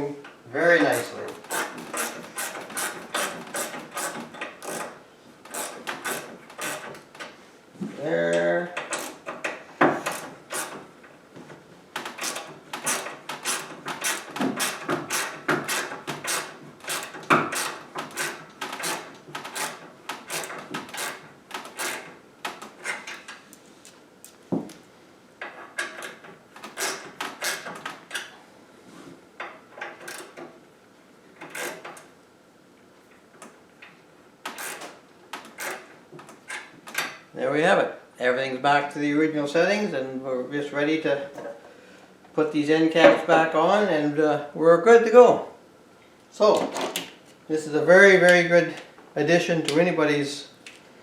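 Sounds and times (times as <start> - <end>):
ratchet clicking: 0.9 - 7.0, 8.8 - 10.8, 12.0 - 23.3, 25.8 - 28.3, 29.9 - 30.4, 31.4 - 32.0, 34.5 - 35.9.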